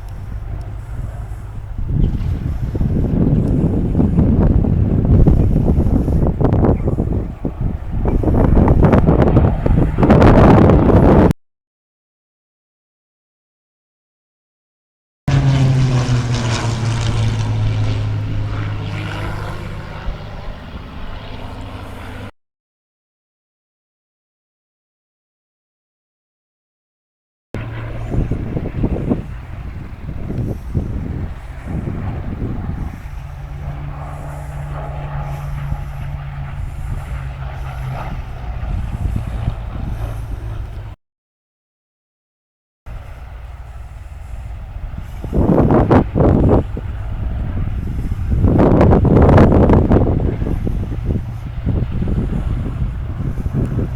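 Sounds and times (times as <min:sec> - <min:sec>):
propeller aircraft engine drone: 0:00.0 - 0:11.3, 0:15.3 - 0:22.3, 0:27.6 - 0:41.0, 0:42.9 - 0:53.9.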